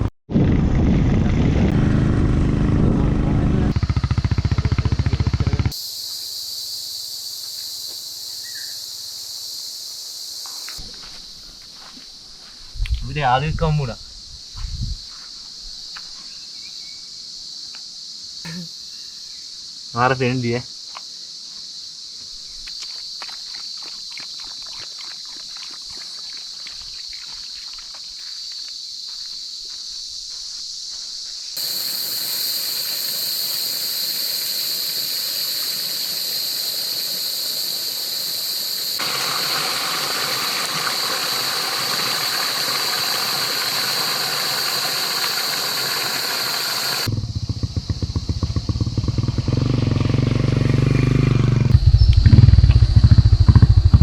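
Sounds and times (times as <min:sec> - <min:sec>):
motorcycle engine running: 0:00.4 - 0:05.8, 0:46.8 - 0:54.0
high insect drone: 0:03.7 - 0:51.0
loud steady hiss: 0:05.7 - 0:10.8, 0:31.5 - 0:47.1.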